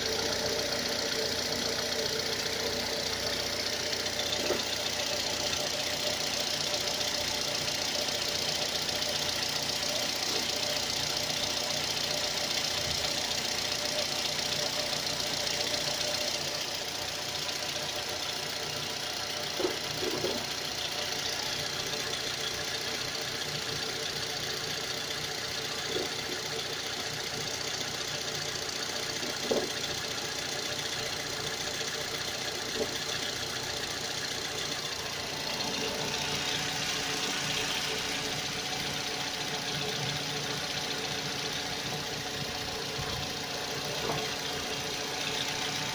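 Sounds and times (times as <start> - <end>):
car engine running: 0.0 - 45.9
noise from under car hood: 0.1 - 7.0, 19.3 - 21.5, 25.6 - 28.0, 29.0 - 30.3, 31.4 - 33.8, 34.6 - 45.9.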